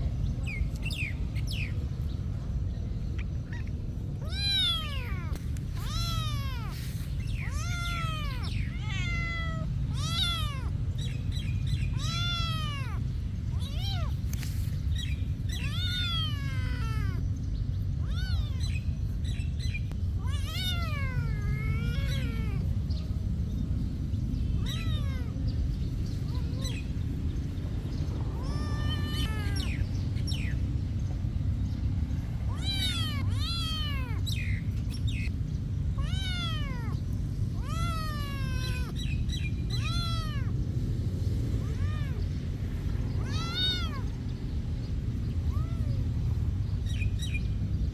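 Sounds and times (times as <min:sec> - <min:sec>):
steady low rumble: 0:00.0 - 0:47.9
kitten meowing: 0:03.4 - 0:17.2, 0:18.0 - 0:19.0, 0:19.6 - 0:22.8, 0:24.5 - 0:27.0, 0:28.2 - 0:30.6, 0:32.5 - 0:35.3, 0:36.0 - 0:40.6, 0:41.6 - 0:44.2, 0:45.3 - 0:47.4.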